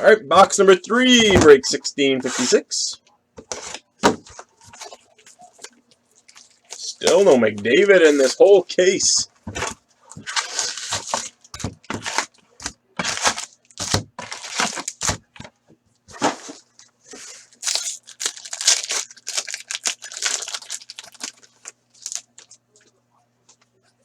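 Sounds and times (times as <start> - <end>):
wrappers crinkling: 3.5 - 15.2, 16.2 - 23.0
card packs tearing open: 9.6 - 15.3, 16.2 - 22.6.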